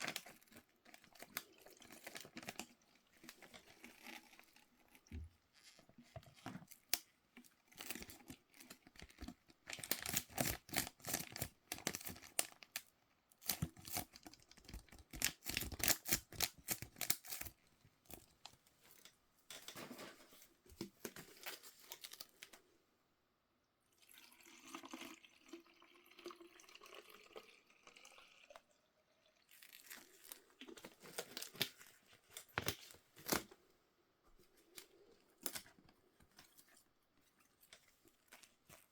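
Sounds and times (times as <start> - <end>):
packaging tearing and crinkling: 7.7 - 12.8, 13.4 - 17.6.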